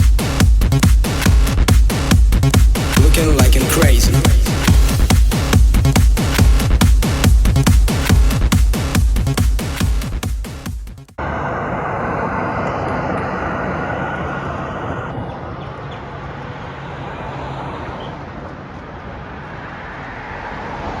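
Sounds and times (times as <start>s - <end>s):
music: 0.0s - 11.2s
engine hum and rushing: 11.2s - 21.0s.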